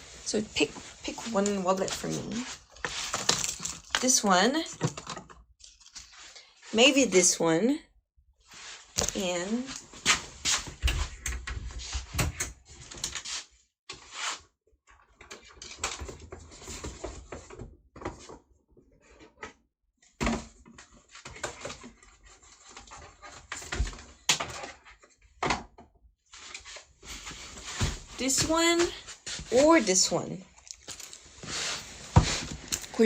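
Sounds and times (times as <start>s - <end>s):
wallets rustling and clicking: 0.6s - 6.4s, 30.7s - 33.0s.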